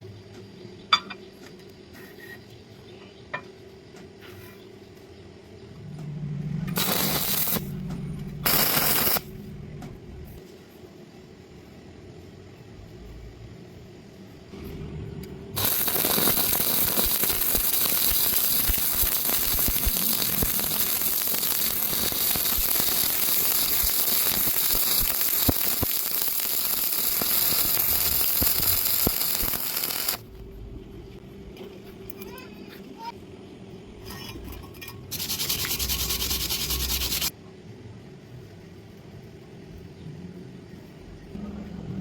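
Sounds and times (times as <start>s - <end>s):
welding arc crackling and hissing: 6.7s - 9.5s, 15.6s - 30.3s, 35.1s - 37.3s.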